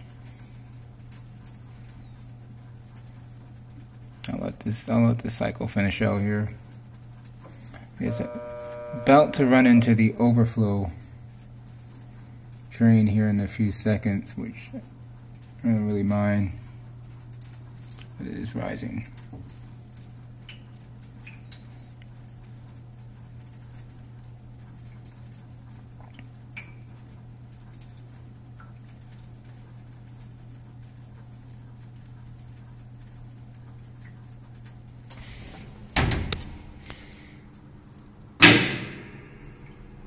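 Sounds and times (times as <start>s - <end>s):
dishwasher humming: 0.0s - 40.0s
metal door slam ringing: 36.0s - 36.4s, 38.4s - 39.3s.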